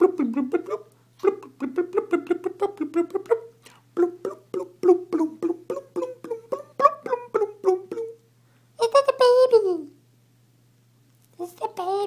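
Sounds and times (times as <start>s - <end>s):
mouth popping sounds: 0.0s - 8.2s.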